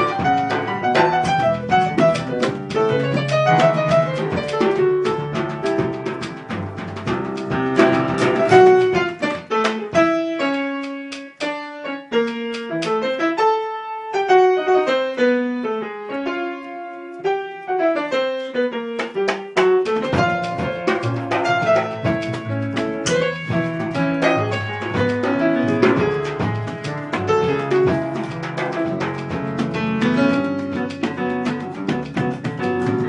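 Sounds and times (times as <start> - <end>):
piano chords: 0.0 - 33.0.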